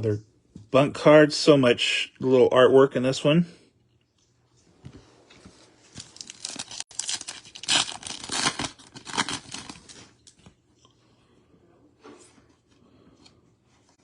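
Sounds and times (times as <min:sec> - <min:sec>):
card pack wrapper tearing: 0:06.0 - 0:10.3.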